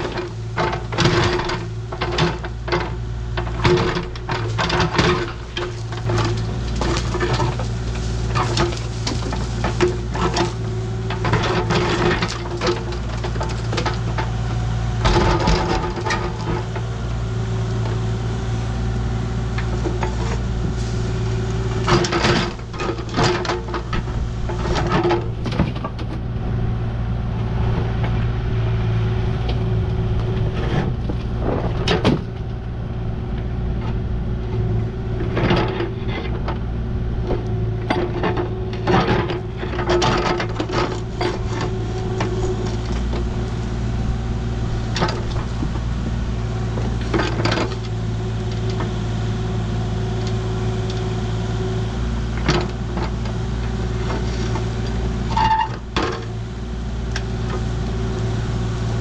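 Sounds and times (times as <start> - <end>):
metal clanks and knocks: 0.0 - 16.9, 21.6 - 26.2, 29.5 - 32.6, 33.8 - 36.6, 37.2 - 43.4
diesel engine running: 0.0 - 59.0.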